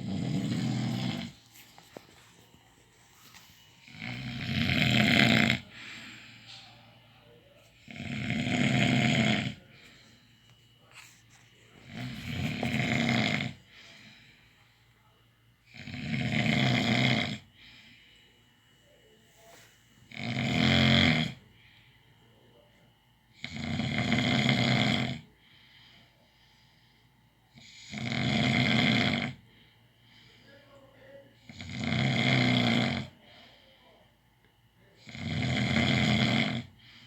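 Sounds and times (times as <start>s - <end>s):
person snoring: 0.0s - 1.8s, 3.2s - 6.5s, 7.7s - 10.0s, 10.9s - 14.3s, 15.7s - 17.5s, 20.1s - 21.4s, 23.4s - 25.3s, 27.6s - 29.5s, 31.4s - 33.6s, 35.0s - 36.8s
quiet breathing: 0.0s - 15.8s, 16.6s - 20.1s, 21.3s - 23.4s, 25.2s - 27.9s, 29.2s - 31.6s, 33.0s - 37.0s.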